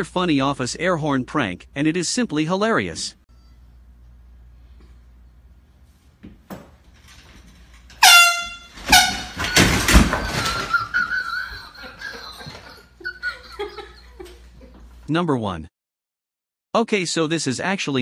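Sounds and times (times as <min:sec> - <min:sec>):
air horn blasts: 0:07.9 - 0:09.7.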